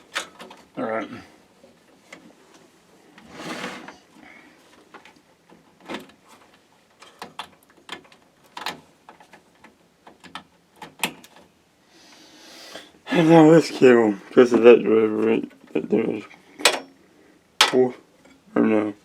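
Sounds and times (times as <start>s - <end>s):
cables clicking and rustling: 4.6s - 11.6s.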